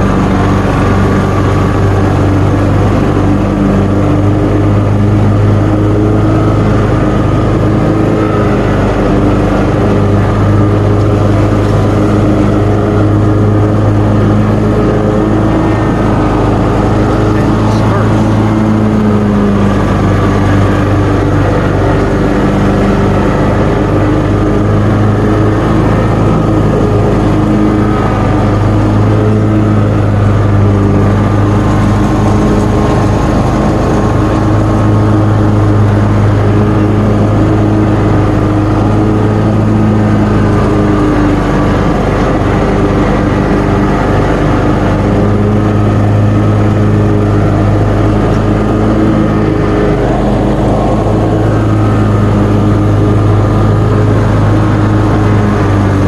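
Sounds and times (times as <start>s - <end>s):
mower engine cutting wet grass: 0.0s - 56.0s.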